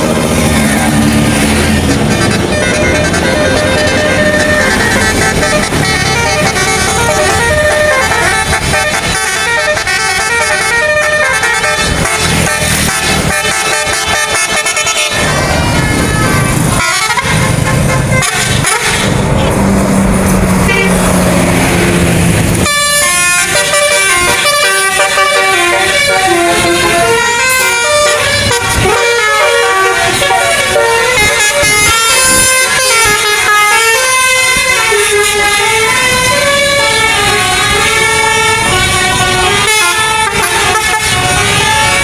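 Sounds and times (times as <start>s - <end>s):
multi-tone bus air horn melody: 0.0s - 19.7s, 20.3s - 42.0s.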